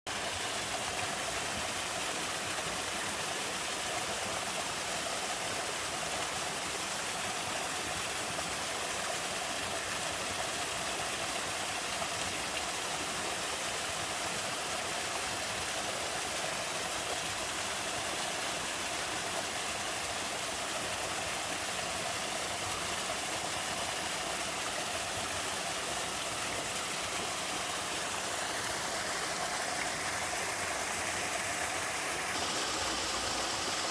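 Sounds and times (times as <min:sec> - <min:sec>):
waterfall pouring: 0:22.3 - 0:33.9.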